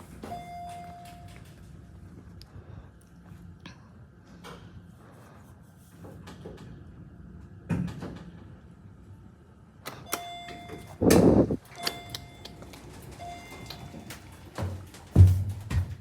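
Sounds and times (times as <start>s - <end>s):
elevator machinery hum: 0.0s - 16.0s
clicks: 9.9s - 12.9s
thud: 15.2s - 16.0s.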